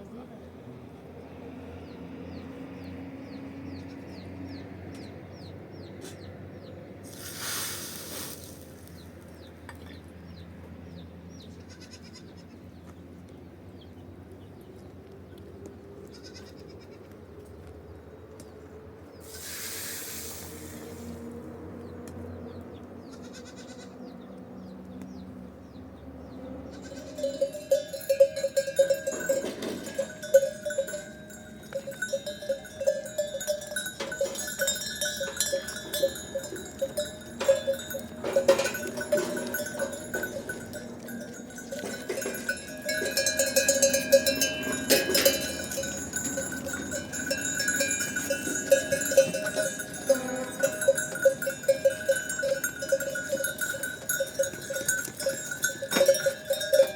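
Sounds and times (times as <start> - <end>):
livestock bells clanking: 26.7 - 56.9.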